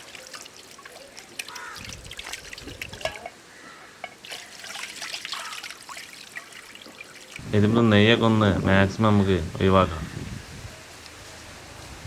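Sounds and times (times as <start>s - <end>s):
small splashes and knocks: 0.0s - 3.4s
trickling water: 0.0s - 7.5s, 9.6s - 12.0s.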